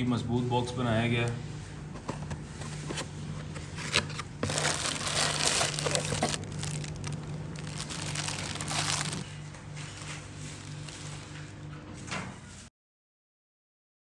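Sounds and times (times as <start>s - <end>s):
packaging crinkling and rustling: 2.3s - 11.4s
packaging clicks: 3.9s - 9.3s.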